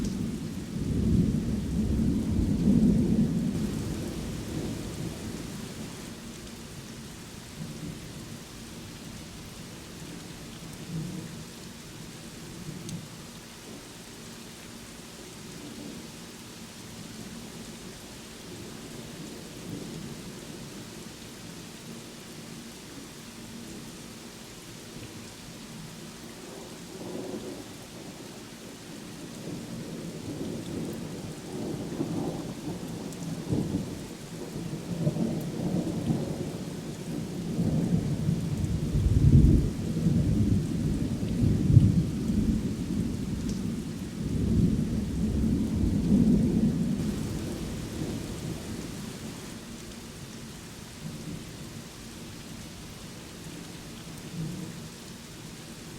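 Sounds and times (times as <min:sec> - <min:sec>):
steady rain: 0:00.0 - 0:55.9
thunder rolling: 0:45.6 - 0:49.5.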